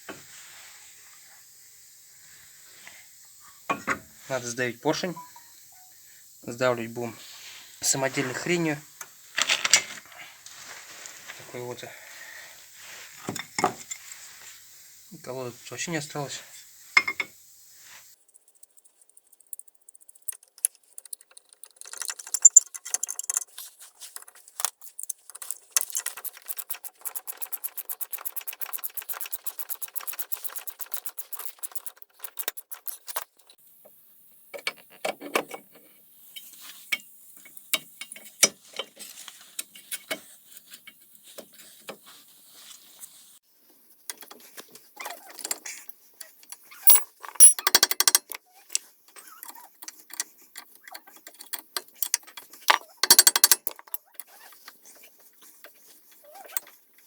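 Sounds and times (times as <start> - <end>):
metal tools and parts clinking: 18.4 - 28.0, 46.5 - 48.4, 49.2 - 54.4
rapid evenly spaced clicks: 26.0 - 32.8.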